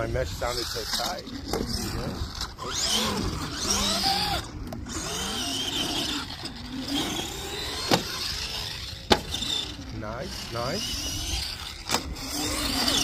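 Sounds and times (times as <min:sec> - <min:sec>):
electric motor and gears whining: 0:00.0 - 0:13.0.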